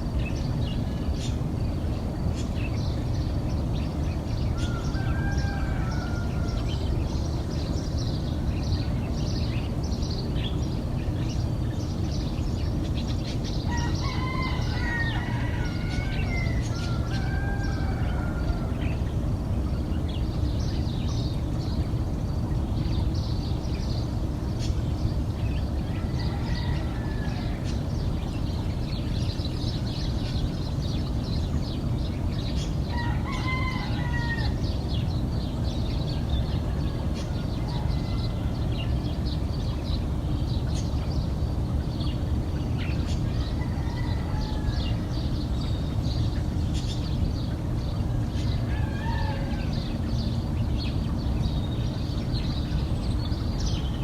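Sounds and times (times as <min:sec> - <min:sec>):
low background rumble: 0:00.0 - 0:54.0
small birds chirping: 0:00.0 - 0:54.0
roosters crowing: 0:02.3 - 0:22.0, 0:23.0 - 0:40.9, 0:41.5 - 0:54.0.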